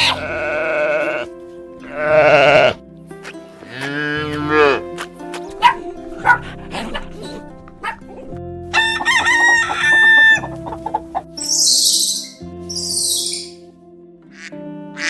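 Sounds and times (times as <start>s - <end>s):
background music: 0.0s - 15.0s
rooster crowing: 8.7s - 10.8s.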